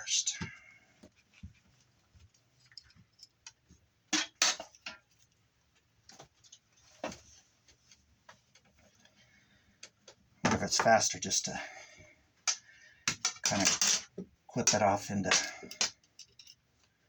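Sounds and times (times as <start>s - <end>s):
copper wire clicking and clattering: 12.4s - 16.6s.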